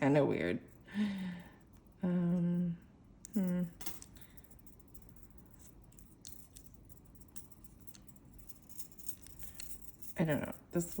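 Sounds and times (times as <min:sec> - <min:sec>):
woman humming: 0:02.0 - 0:04.0
wire clicking while handled: 0:03.2 - 0:10.2.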